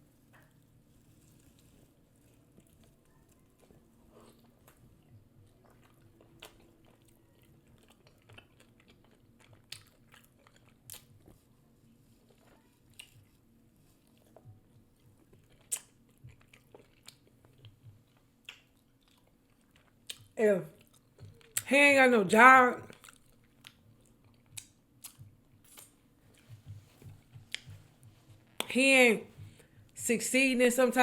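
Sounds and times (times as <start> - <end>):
chewing and biting: 0.5 - 21.7, 22.9 - 28.7.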